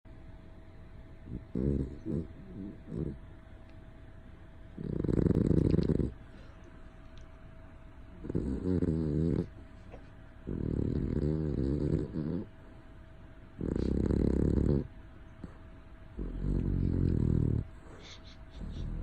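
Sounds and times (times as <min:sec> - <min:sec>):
pet snoring: 0:01.2 - 0:03.2, 0:04.8 - 0:06.2, 0:08.2 - 0:09.5, 0:10.4 - 0:12.5, 0:13.6 - 0:15.6, 0:16.2 - 0:19.0.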